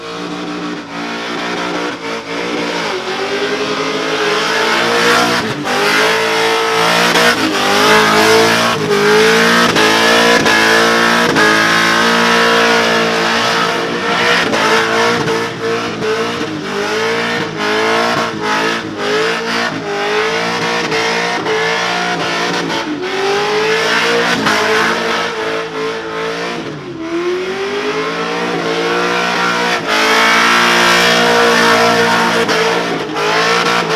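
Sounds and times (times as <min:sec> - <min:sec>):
engine revving hard: 0:00.0 - 0:33.9
spinning tyres hissing: 0:02.3 - 0:17.8.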